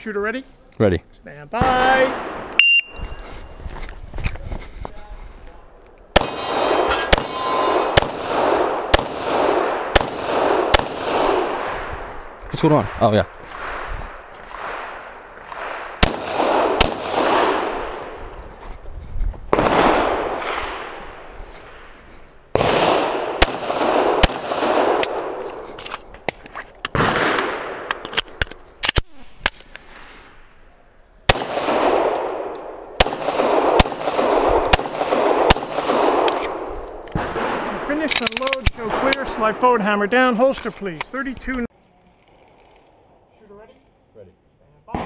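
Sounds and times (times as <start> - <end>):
pistol shots echoing: 6.1 - 12.0, 14.5 - 18.1, 22.5 - 25.4, 26.9 - 27.9, 31.3 - 37.8.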